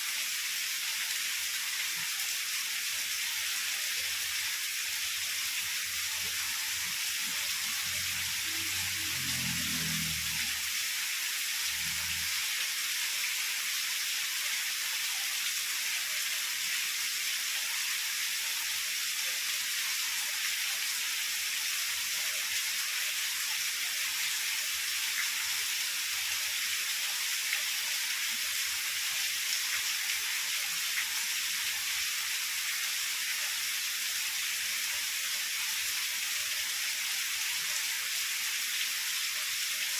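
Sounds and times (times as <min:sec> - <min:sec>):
heavy rain hissing: 0:05.2 - 0:12.9.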